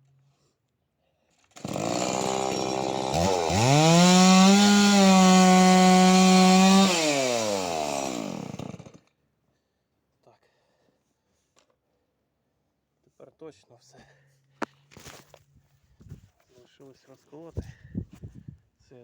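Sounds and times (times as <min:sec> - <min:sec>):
chainsaw cutting a log: 0:01.5 - 0:09.1.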